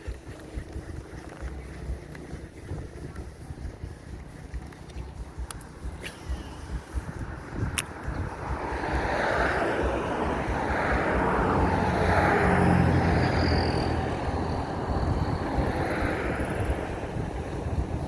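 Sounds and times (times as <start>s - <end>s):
vehicle passing by: 7.1s - 18.0s.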